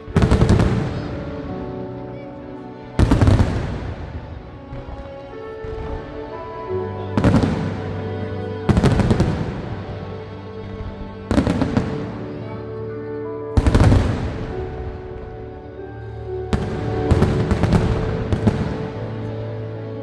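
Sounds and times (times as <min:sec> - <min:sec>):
fireworks bursting with crackles: 0:00.0 - 0:01.8, 0:03.0 - 0:06.4, 0:07.1 - 0:10.2, 0:11.3 - 0:12.5, 0:13.6 - 0:15.5, 0:16.5 - 0:19.4
music with long held chords: 0:00.0 - 0:20.0.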